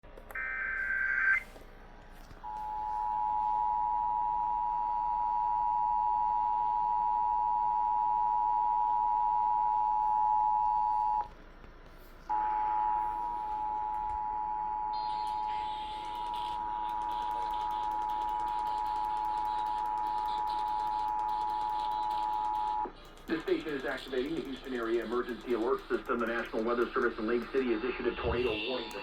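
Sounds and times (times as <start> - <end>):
warbling data tones: 0.3 - 1.4, 13.6 - 29.0.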